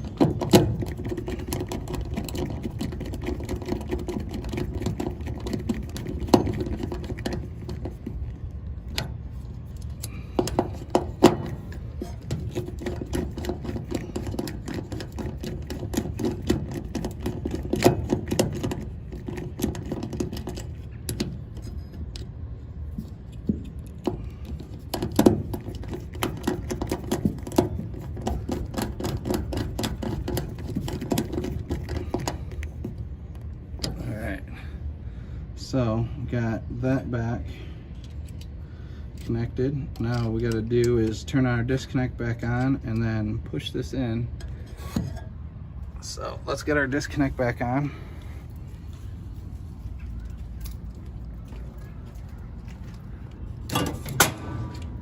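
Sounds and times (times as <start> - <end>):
steady low hum: 0.0 - 55.0
hand tools clicking and tapping: 9.7 - 22.3, 23.3 - 34.0.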